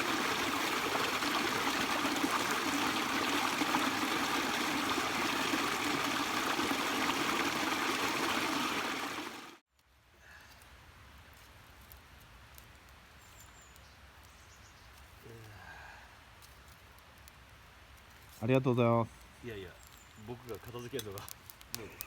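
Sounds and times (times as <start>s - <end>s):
running water: 0.0s - 9.6s.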